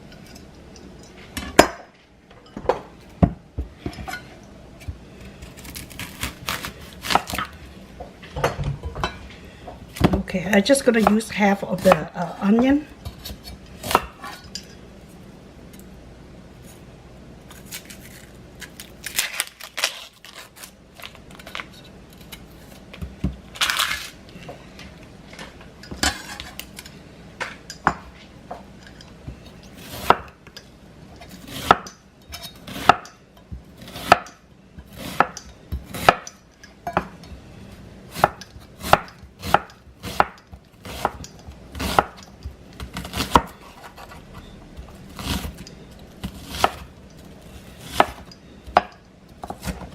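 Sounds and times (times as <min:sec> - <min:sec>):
knife chopping on cutting board: 0:41.8 - 0:42.2.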